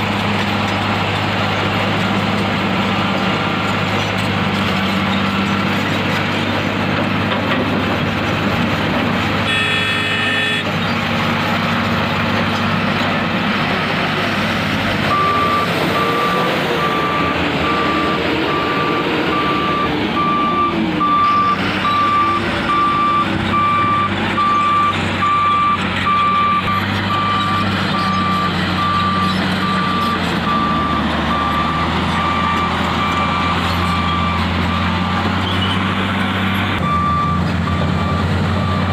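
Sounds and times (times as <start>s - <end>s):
heavy diesel engines running: 0.0s - 38.9s
reversing alarm beeping: 9.5s - 10.6s, 15.1s - 35.0s, 36.8s - 38.9s
short horn-like tone: 9.5s - 10.7s.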